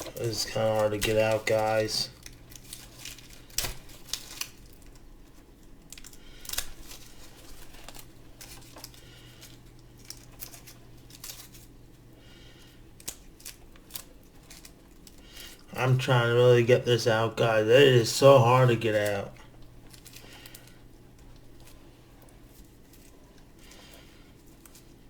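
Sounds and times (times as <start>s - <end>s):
plastic packaging clicks and crinkles: 0.0s - 15.7s, 18.9s - 25.0s.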